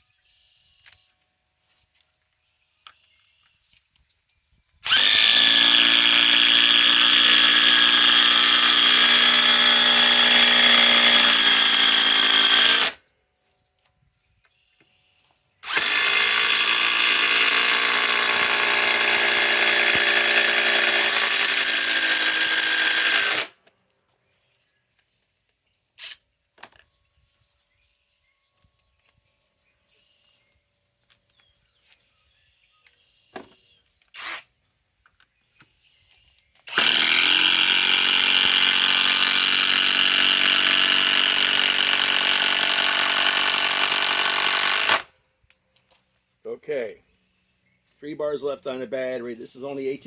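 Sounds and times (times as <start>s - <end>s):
impact driver hammering screws: 4.8s - 13.0s, 15.6s - 23.6s, 36.7s - 45.1s.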